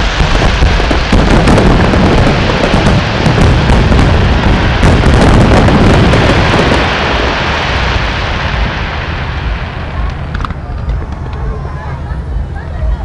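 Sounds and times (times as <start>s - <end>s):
fireworks bangs and crackling: 0.0s - 13.0s.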